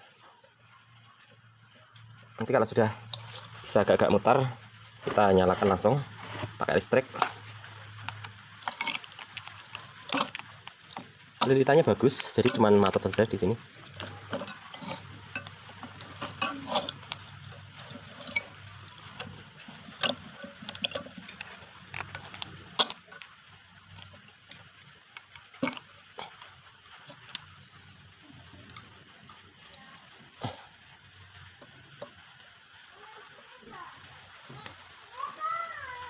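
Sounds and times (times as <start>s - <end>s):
metallic clicks and scrapes: 3.0s - 3.7s, 5.0s - 11.6s, 12.2s - 27.6s.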